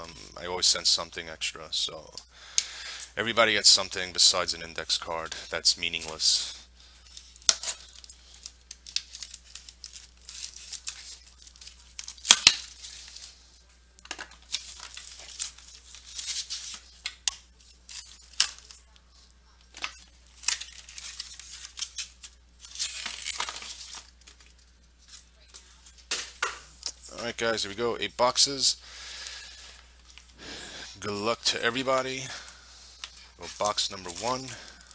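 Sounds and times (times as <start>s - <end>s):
plastic wrapping tearing and crinkling: 7.0s - 27.0s, 32.8s - 34.9s.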